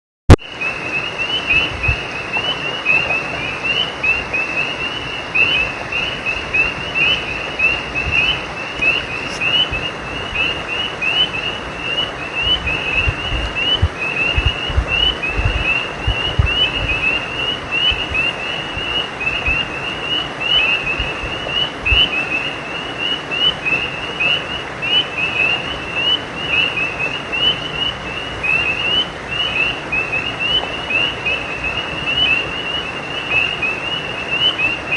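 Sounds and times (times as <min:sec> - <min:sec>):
frogs chirping: 0:00.4 - 0:34.9
steady hiss: 0:00.5 - 0:34.9
low thuds: 0:12.5 - 0:17.0.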